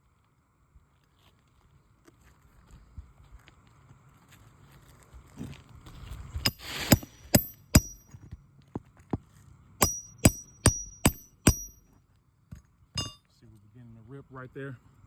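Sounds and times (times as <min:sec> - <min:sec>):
metal roofing tool clinking: 0:06.4 - 0:08.2, 0:09.8 - 0:11.8, 0:13.0 - 0:13.2.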